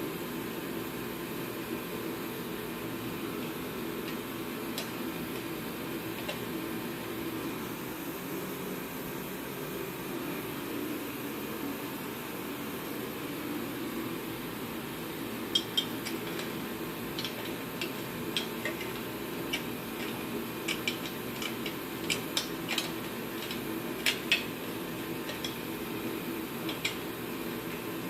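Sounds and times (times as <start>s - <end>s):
low background hum: 0.0s - 28.0s
metal tools clicking and clinking: 17.2s - 24.5s, 25.3s - 25.6s.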